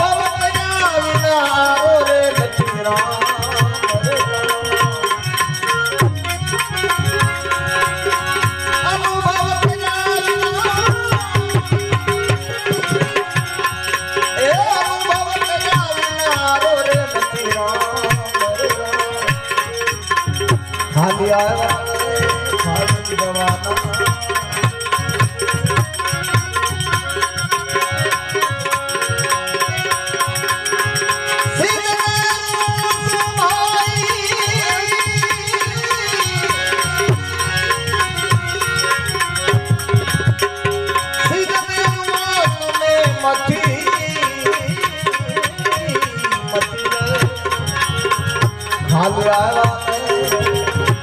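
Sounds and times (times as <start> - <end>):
fast hand-drum rhythm: 0.0 - 51.0
instrumental melody line: 0.0 - 51.0
person singing: 41.2 - 51.0.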